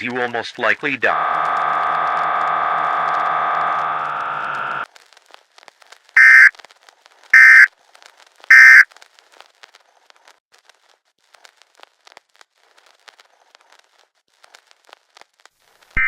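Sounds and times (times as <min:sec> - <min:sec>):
faint crackling clicks: 0:02.2 - 0:16.0
alert data tone bursts: 0:06.2 - 0:06.5, 0:07.4 - 0:07.7, 0:08.5 - 0:08.8.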